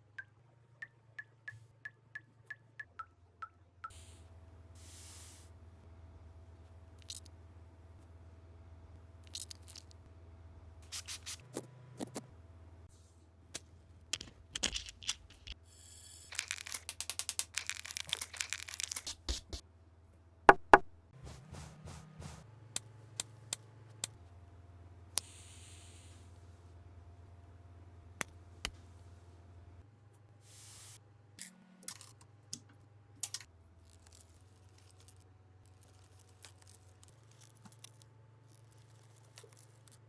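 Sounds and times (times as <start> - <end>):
scraping or tearing: 16.3 - 19.6.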